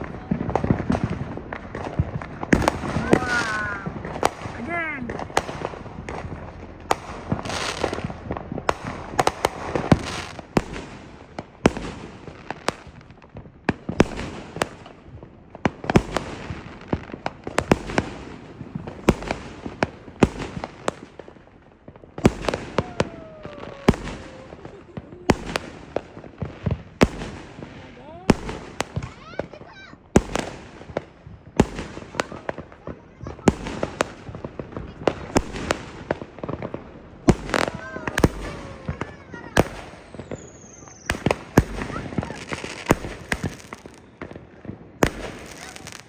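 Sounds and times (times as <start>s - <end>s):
fireworks crackling: 0.0s - 46.0s
faint firework whistle: 22.3s - 25.7s, 37.3s - 44.6s.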